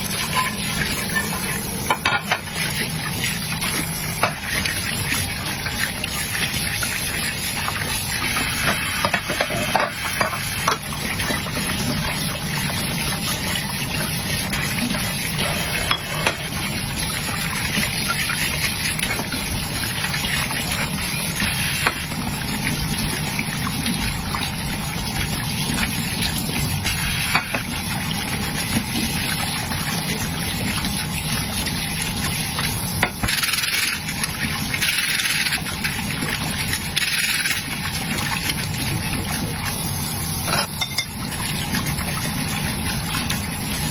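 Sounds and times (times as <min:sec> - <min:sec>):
tap water running: 0:00.0 - 0:43.9
dishes clinking: 0:00.2 - 0:02.5, 0:15.6 - 0:16.5, 0:40.5 - 0:41.2.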